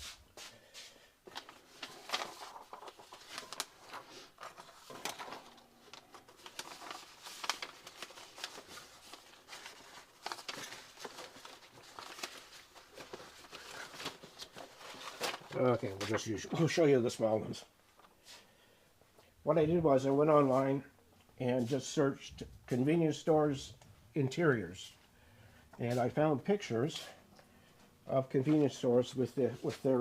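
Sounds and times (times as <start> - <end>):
papers rustling: 1.2 - 18.4.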